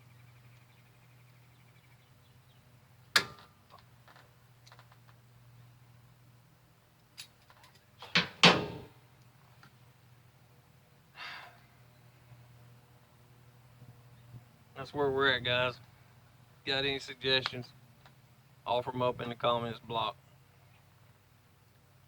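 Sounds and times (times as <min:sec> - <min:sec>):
rattling clatter of knocks: 0:07.4 - 0:09.0.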